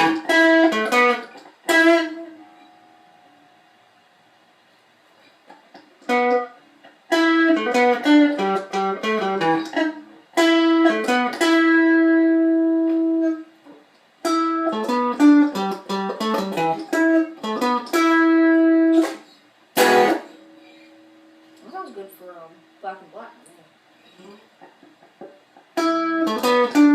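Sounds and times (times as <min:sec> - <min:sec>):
scratchy guitar strum: 0:00.0 - 0:03.9, 0:06.0 - 0:13.4, 0:14.2 - 0:21.6, 0:25.8 - 0:26.9
electric guitar lead riff: 0:00.0 - 0:04.0, 0:05.7 - 0:21.8, 0:24.0 - 0:26.9.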